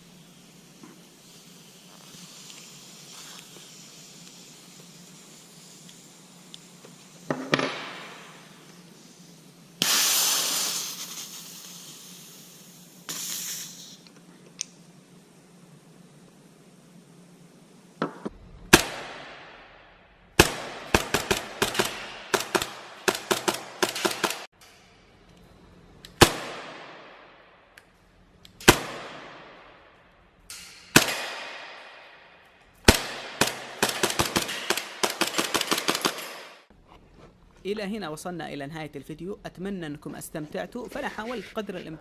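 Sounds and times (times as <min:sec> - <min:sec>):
rapid gunfire: 0:20.4 - 0:24.5, 0:32.9 - 0:36.6
gunshots echoing: 0:30.9 - 0:32.0, 0:32.9 - 0:36.6.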